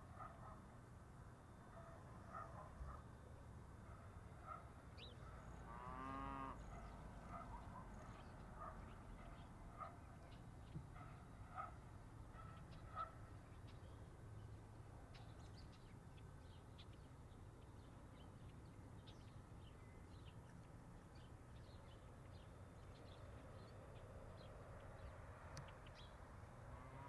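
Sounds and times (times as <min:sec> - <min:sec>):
distant road traffic rumble: 0:00.0 - 0:27.0.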